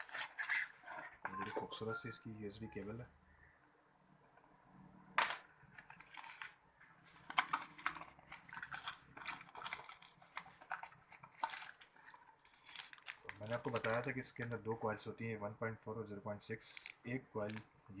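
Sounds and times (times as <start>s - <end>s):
packaging crinkling: 5.8s - 14.5s.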